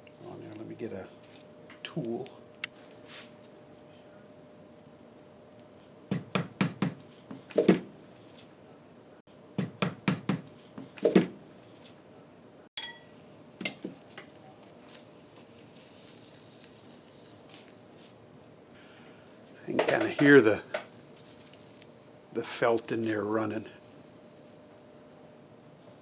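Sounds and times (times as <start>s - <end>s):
light metal tapping: 12.8s - 14.3s.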